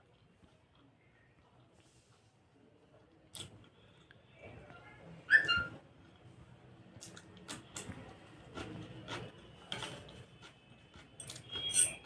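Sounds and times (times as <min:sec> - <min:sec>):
person chewing food: 0:07.0 - 0:11.7.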